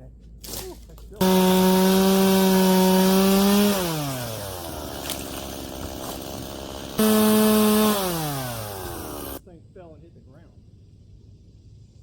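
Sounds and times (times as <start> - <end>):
chainsaw revving and idling: 1.2 - 9.4.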